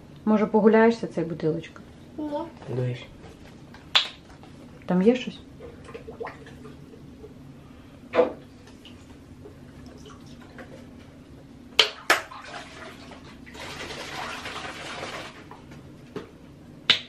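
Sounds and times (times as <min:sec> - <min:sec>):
water splashes in bathtub: 0:05.6 - 0:06.8, 0:11.8 - 0:15.6.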